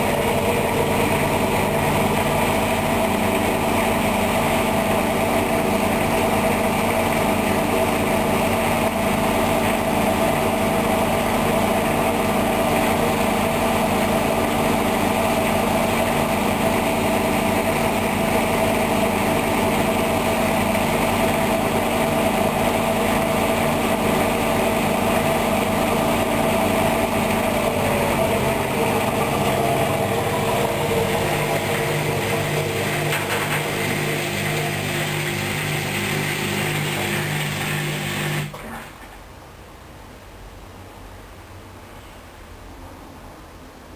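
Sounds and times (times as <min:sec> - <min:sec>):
washing machine drum spinning: 0:00.0 - 0:39.1.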